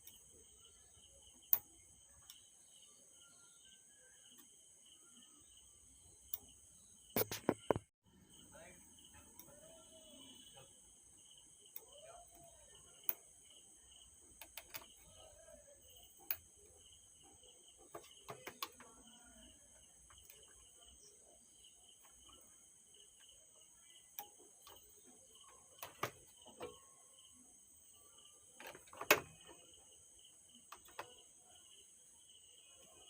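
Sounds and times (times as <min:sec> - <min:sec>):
crickets chirping: 0:00.0 - 0:33.0
small tools clicking and tapping: 0:14.3 - 0:16.6, 0:17.2 - 0:20.7, 0:24.1 - 0:26.8, 0:30.6 - 0:31.2.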